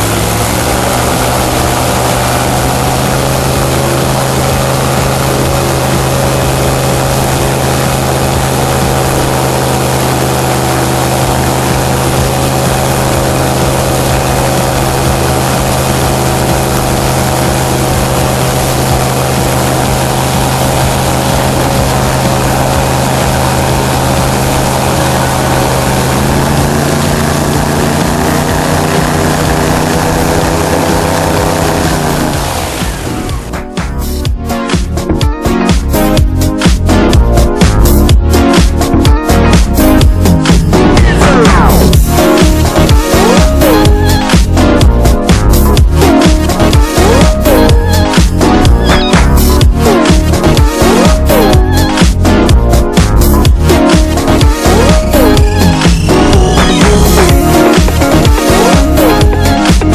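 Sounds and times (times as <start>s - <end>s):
propeller engine drone: 0.0s - 59.9s.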